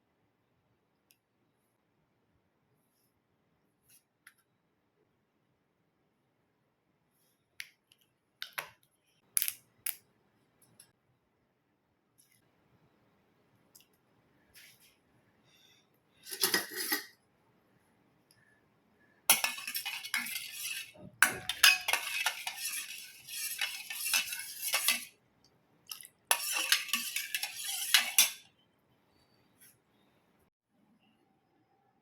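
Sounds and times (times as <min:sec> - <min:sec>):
metal spoon clinking against bowl: 0:19.3 - 0:25.1, 0:25.9 - 0:28.5.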